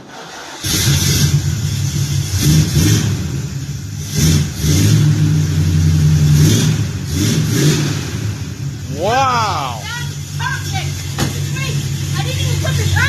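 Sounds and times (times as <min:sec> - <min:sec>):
car engine starting and idling: 0:00.0 - 0:13.0.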